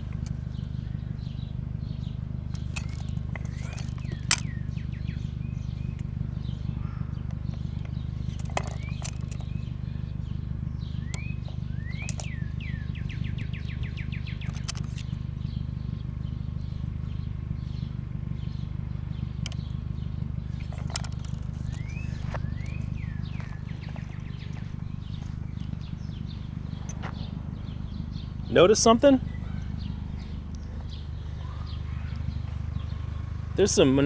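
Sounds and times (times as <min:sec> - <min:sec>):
songbirds chirping: 0:00.0 - 0:34.0
steady low rumble: 0:00.0 - 0:34.0
sharp clicks: 0:19.4 - 0:19.8.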